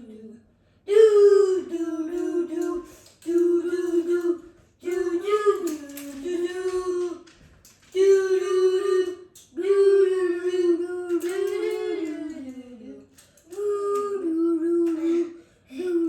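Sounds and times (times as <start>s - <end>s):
person singing wordless notes: 8.0s - 16.0s.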